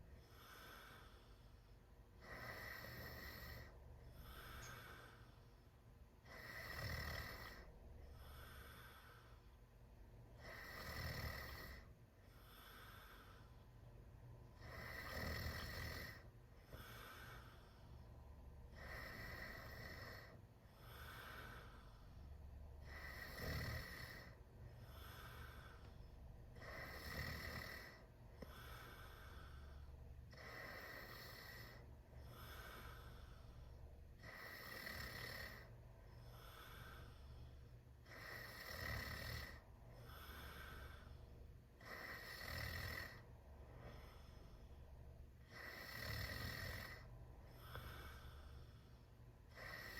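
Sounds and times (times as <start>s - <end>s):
soft breathing: 0.0s - 49.9s
person snoring: 2.2s - 5.3s, 6.2s - 9.4s, 10.4s - 11.9s, 14.6s - 17.7s, 18.7s - 22.0s, 22.8s - 25.8s, 26.6s - 29.7s, 30.4s - 33.5s, 34.2s - 35.7s, 38.0s - 41.2s, 41.8s - 43.2s, 45.5s - 48.7s, 49.5s - 49.9s.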